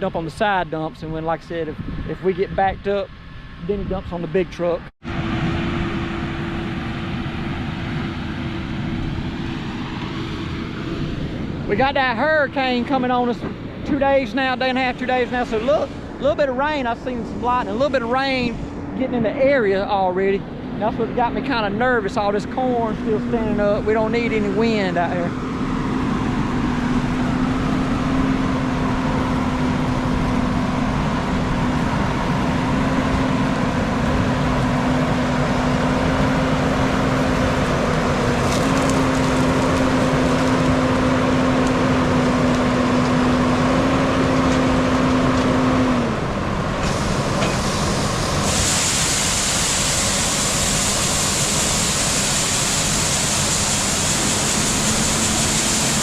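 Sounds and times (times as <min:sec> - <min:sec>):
farm vehicle engine running: 0:00.0 - 0:56.0
loud hiss: 0:46.8 - 0:56.0.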